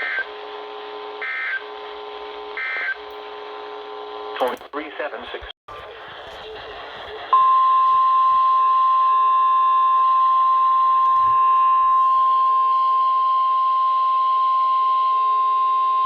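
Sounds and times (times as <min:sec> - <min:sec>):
faint receiver hiss: 0:04.4 - 0:04.8.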